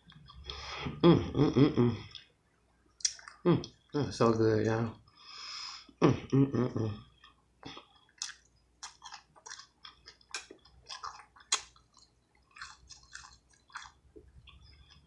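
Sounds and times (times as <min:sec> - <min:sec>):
crunchy chewing: 0:08.0 - 0:15.0
wet mouth smacks: 0:11.5 - 0:11.8.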